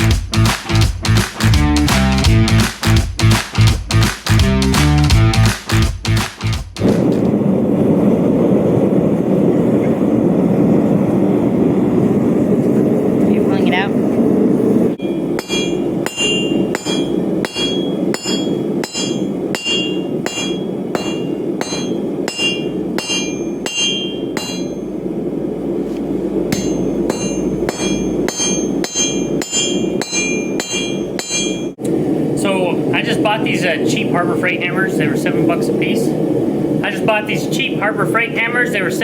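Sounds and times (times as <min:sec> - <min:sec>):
low rushing noise: 0:14.0 - 0:39.0
hammer striking steel on anvil: 0:15.0 - 0:25.0, 0:26.5 - 0:31.8.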